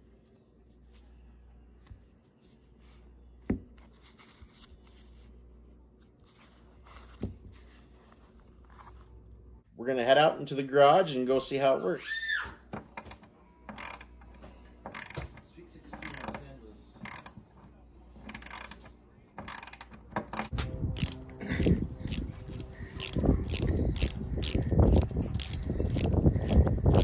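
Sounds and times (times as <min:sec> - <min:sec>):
ratchet clicking: 0:13.0 - 0:14.3, 0:14.9 - 0:15.4, 0:16.0 - 0:17.4, 0:18.2 - 0:27.0.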